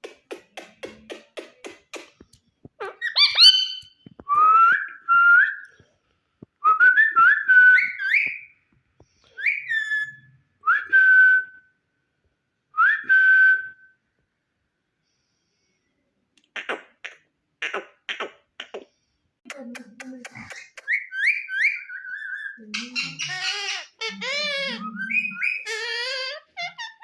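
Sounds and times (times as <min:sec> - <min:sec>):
parakeet whistling: 0:02.9 - 0:05.6, 0:09.4 - 0:10.9, 0:20.9 - 0:26.4.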